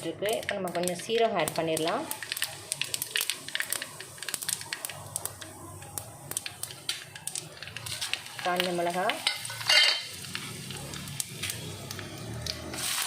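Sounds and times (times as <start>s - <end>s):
seeds popping in hot oil: 0.0s - 13.0s.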